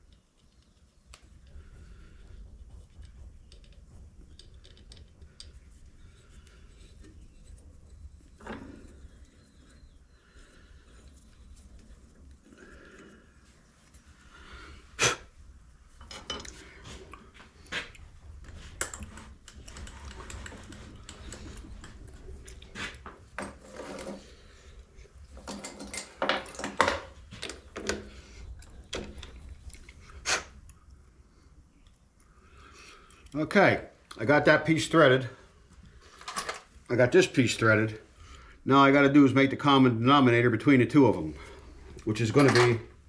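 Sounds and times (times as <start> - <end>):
metal tools clinking and knocking: 16.0 - 16.5, 25.4 - 28.0, 42.2 - 42.9.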